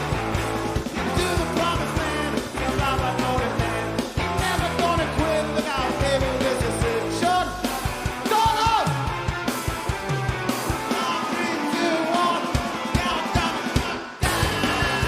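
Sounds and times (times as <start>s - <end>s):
bass guitar: 0.0s - 15.0s
electric guitar: 0.0s - 15.0s
person singing: 1.0s - 7.7s, 10.8s - 15.0s.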